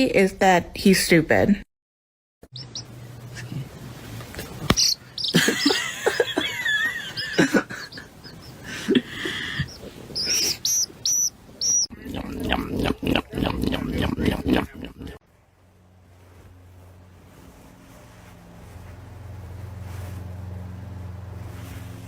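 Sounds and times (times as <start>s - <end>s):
high animal chirps: 2.6s - 3.0s, 4.7s - 5.8s, 7.1s - 11.9s.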